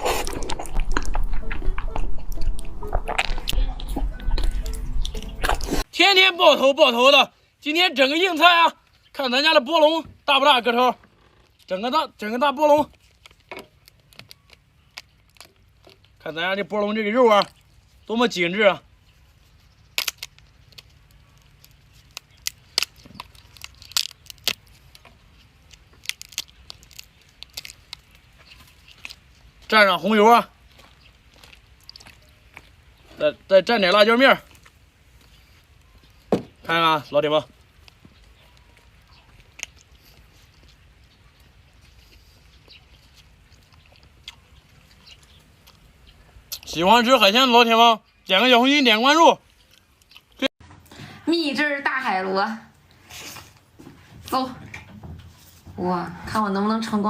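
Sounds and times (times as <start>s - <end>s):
wet mouth clicks: 0.0s - 5.8s
faint chewing: 0.0s - 5.9s, 12.9s - 16.3s, 19.0s - 29.7s, 30.5s - 33.2s, 37.5s - 46.8s, 49.4s - 50.9s
lobster shell cracking: 12.9s - 16.2s, 19.8s - 29.3s.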